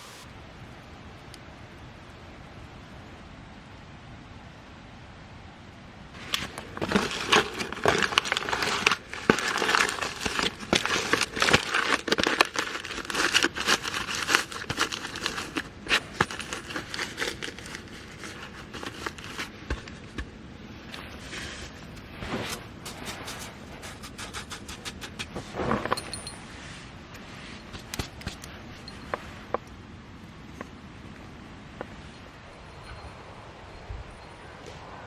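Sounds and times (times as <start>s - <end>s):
material crinkling and rustling: 6.2s - 29.7s.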